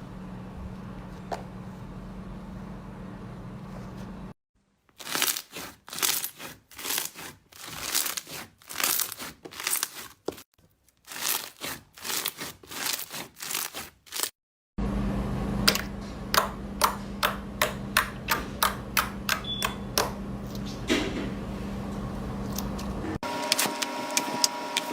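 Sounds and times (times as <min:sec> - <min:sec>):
slime squishing and crackling: 0:04.9 - 0:14.4.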